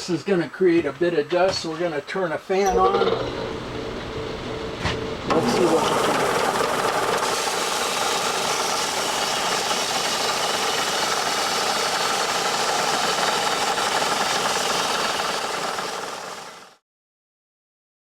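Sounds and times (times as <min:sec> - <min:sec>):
polishing machine whirring: 0:05.1 - 0:16.8.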